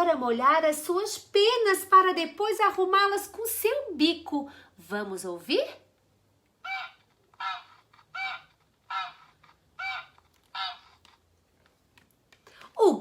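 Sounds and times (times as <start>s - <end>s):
goose honking: 6.6s - 11.0s.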